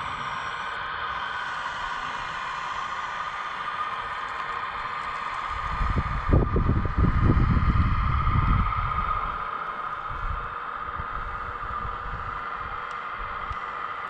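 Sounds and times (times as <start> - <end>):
low rumbling: 5.6 - 9.5.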